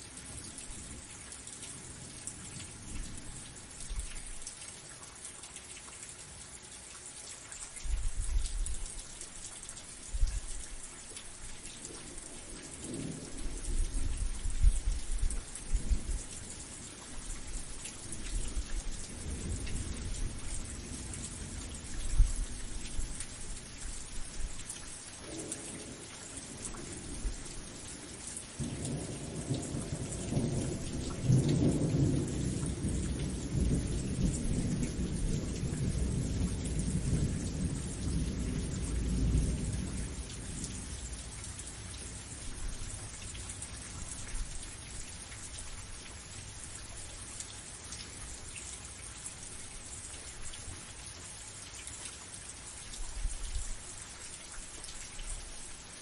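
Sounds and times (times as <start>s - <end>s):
steady rain falling: 0.0s - 56.0s
thunder rumbling: 28.6s - 41.1s.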